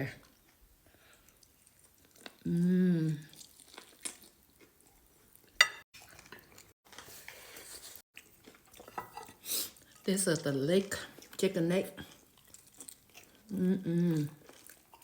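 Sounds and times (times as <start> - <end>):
person humming: 2.5 - 3.2, 13.5 - 14.3
utensil clinking on dish: 5.6 - 6.5
tableware handling and eating: 5.6 - 6.6, 8.8 - 9.4.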